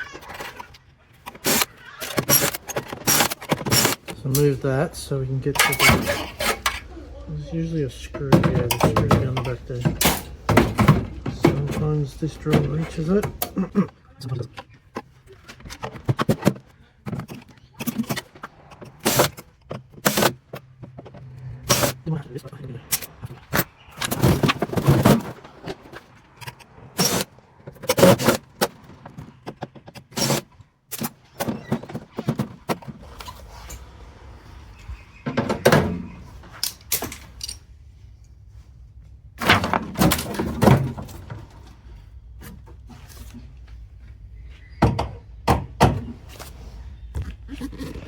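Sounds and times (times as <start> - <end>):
metal parts knocking: 0.0 - 4.5, 5.5 - 6.9, 8.0 - 22.1, 22.8 - 33.0.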